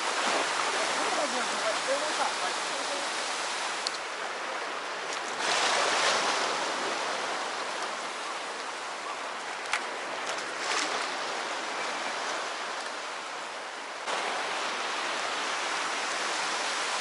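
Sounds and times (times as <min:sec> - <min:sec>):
sea waves washing on shore: 0:00.0 - 0:17.0.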